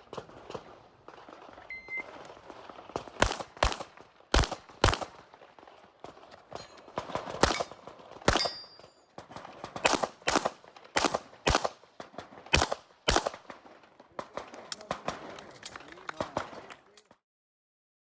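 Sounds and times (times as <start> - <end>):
handgun shots: 8.3 - 8.7, 12.6 - 13.4.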